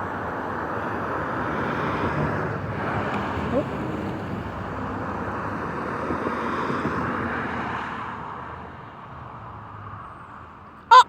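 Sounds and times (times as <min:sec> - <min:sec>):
road vehicle passing by: 0:00.8 - 0:08.4.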